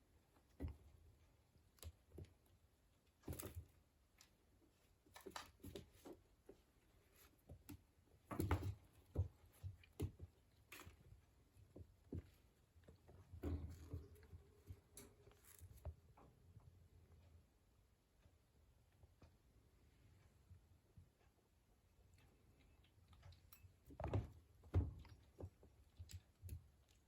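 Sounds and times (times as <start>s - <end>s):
kitten tapping and scuffling: 0.2s - 16.4s.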